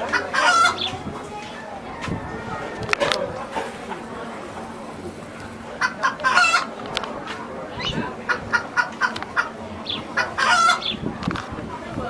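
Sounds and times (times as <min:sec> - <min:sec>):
bird calls: 0:00.0 - 0:01.0, 0:07.7 - 0:11.1.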